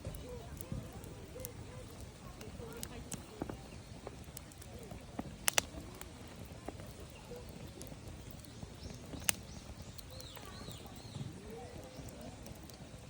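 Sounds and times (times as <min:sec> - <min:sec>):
campfire crackling: 0:00.0 - 0:13.0
sharp pops: 0:05.4 - 0:06.1.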